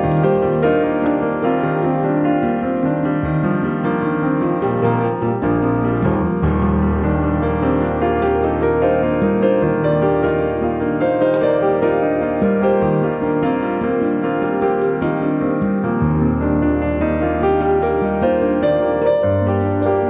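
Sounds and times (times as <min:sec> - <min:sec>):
background piano music: 0:00.0 - 0:20.0.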